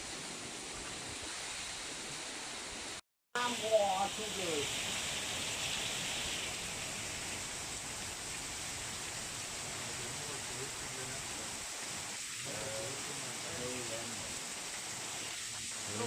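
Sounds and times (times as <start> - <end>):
wind and rain rushing: 0.0 - 16.0.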